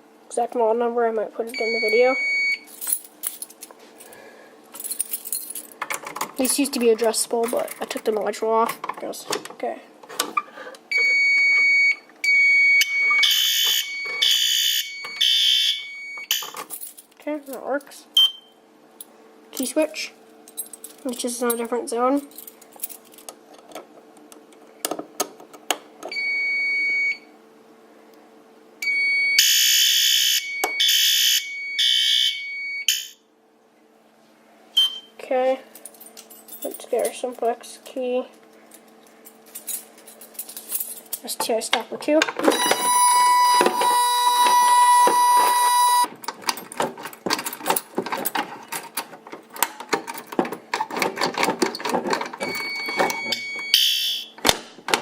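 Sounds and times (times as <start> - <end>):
high electronic alarm tone: 1.6 - 2.6, 11.0 - 16.4, 28.8 - 33.2, 42.5 - 46.1, 52.4 - 54.3
buzzing alarm horn: 12.4 - 16.2, 42.5 - 46.1
warning horn high tone: 42.6 - 46.1
clicks and rattles: 46.1 - 53.2.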